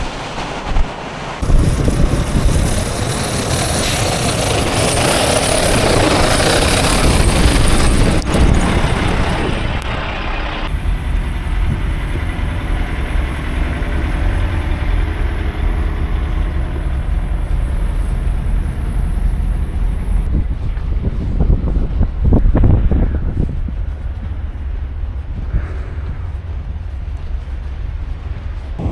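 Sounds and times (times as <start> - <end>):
strong wind on microphone: 0.0 - 28.9
truck engines idling: 1.0 - 20.9, 23.3 - 28.9.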